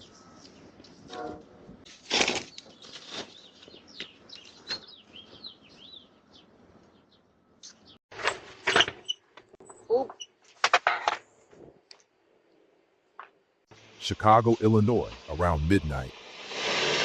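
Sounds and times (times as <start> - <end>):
small birds chirping: 0.0 - 1.1, 2.5 - 8.0.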